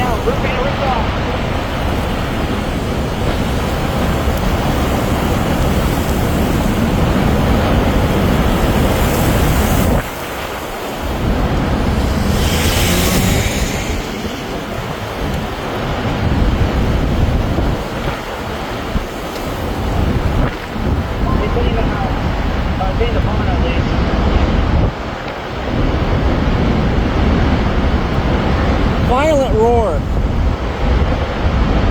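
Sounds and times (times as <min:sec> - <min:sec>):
tornado roaring: 0:00.0 - 0:31.9
wind buffeting microphone: 0:00.0 - 0:31.9.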